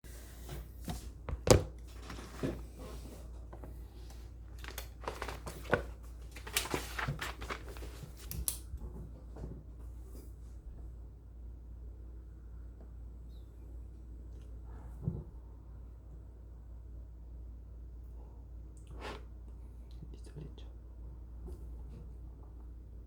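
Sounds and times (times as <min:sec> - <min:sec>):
papers rustling: 0:00.7 - 0:08.6.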